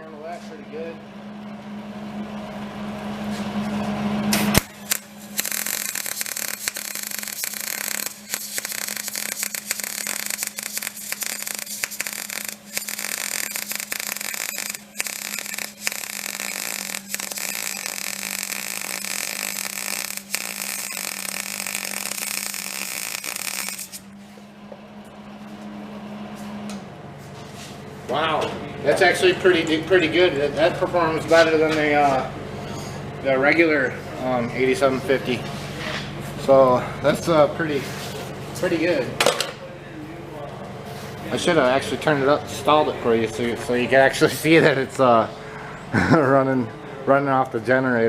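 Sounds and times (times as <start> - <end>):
electric arc welding crackle: 4.4 - 24.1.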